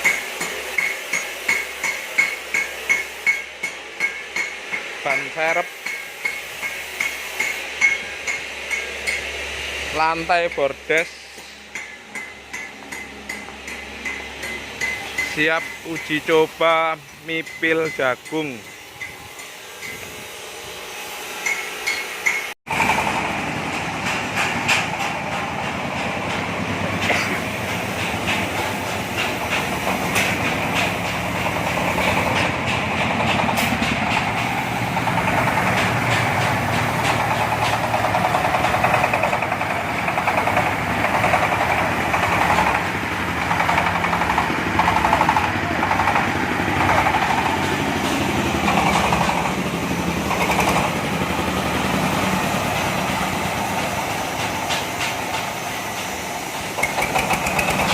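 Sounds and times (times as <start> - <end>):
diesel engine drone: 19.8 - 57.9.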